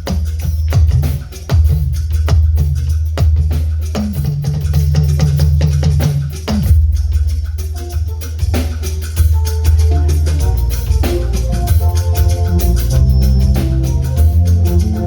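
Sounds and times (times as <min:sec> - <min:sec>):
busy drums: 0:00.0 - 0:15.0
hand percussion: 0:00.0 - 0:15.0
heavy bass line: 0:07.8 - 0:15.0.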